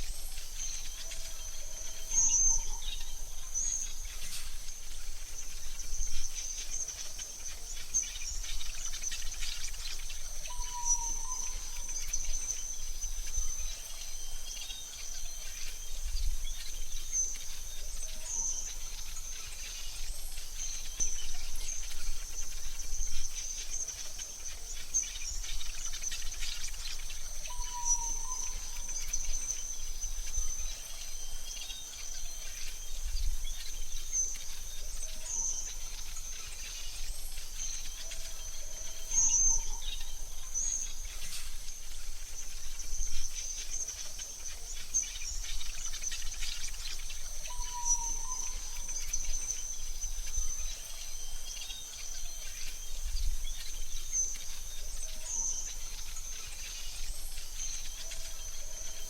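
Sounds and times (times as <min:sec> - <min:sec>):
bird calls: 0:00.0 - 0:59.0
insect drone: 0:00.0 - 0:59.0.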